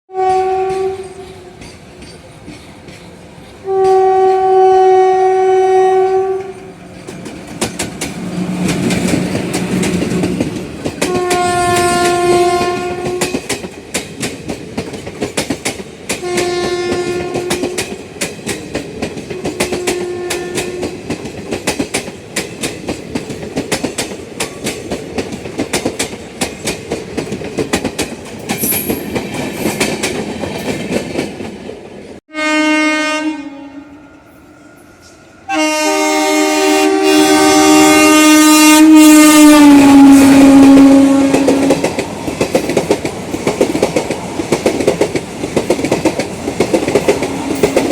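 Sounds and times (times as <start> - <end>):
train horn: 0.1 - 1.6, 3.6 - 6.8, 11.0 - 13.5, 16.2 - 17.9, 19.6 - 21.0, 32.3 - 41.9
train wheels clattering over rails: 0.4 - 4.0, 6.4 - 32.2, 40.2 - 47.9.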